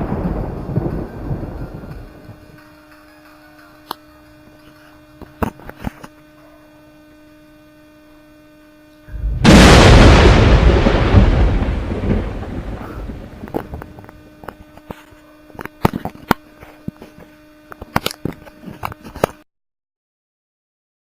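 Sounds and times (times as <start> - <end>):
thunder rumble: 0.0 - 2.6, 9.1 - 14.4
steady low hum: 0.0 - 19.4
sharp crackles: 9.0 - 19.4.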